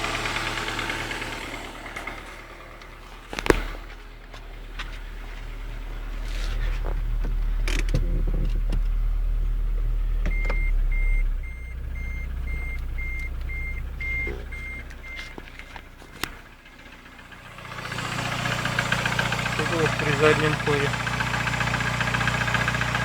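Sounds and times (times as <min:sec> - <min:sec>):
car engine knocking under load: 0:00.0 - 0:23.0
parking sensor beeping: 0:09.6 - 0:16.4.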